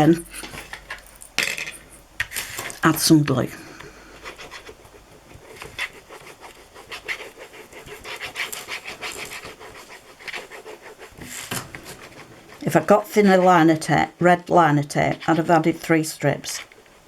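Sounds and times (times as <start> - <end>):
glue brush strokes on card: 2.8 - 14.2.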